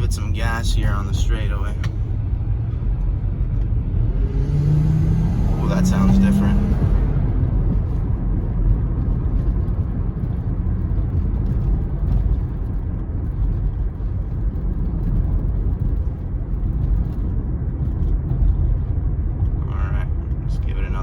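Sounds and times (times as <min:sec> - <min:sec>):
car engine running: 0:00.0 - 0:21.0
road noise: 0:00.0 - 0:21.0.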